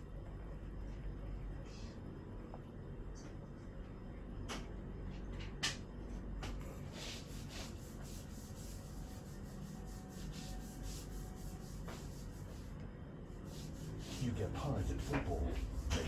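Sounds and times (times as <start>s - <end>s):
rubbing and rustling strokes: 6.6s - 16.0s.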